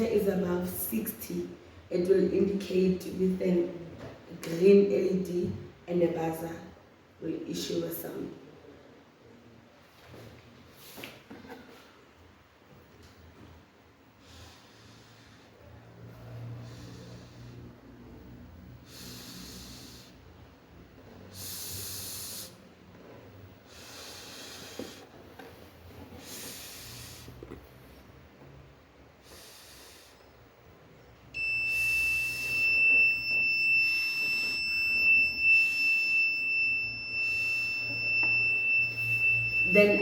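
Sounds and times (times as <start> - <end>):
high-pitched buzzer tone: 31.4 - 40.0.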